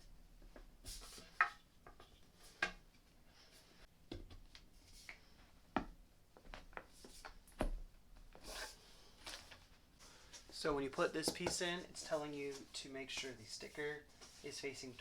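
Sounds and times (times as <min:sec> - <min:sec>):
quiet rubbing and rustling: 0:06.4 - 0:07.6, 0:08.2 - 0:15.0.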